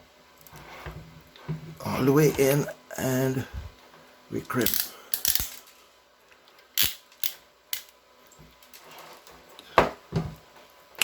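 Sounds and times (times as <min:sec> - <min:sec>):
crimping tool clicks and snaps: 0:04.6 - 0:05.6, 0:06.8 - 0:08.0.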